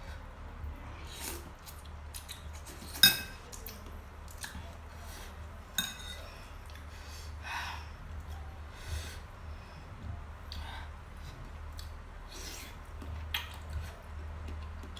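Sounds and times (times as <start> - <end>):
low steady hum: 0.0 - 14.9
spoon clinking against bowl: 5.8 - 6.2.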